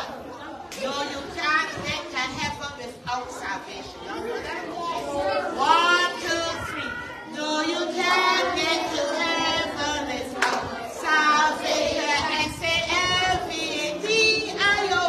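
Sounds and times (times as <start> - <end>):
children singing: 4.5 - 15.0
sharp clap or knock: 10.4 - 10.6.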